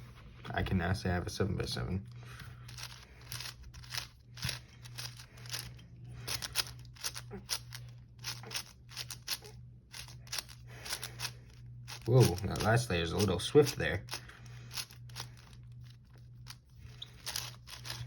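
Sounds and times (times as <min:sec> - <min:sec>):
puzzle cube plastic clicks: 0:02.7 - 0:05.7, 0:17.2 - 0:18.0.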